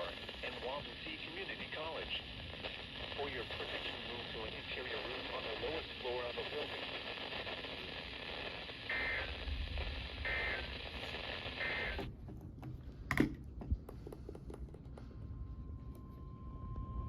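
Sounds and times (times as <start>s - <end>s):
radio static: 0.0s - 12.1s
faint steady tone: 15.0s - 17.0s.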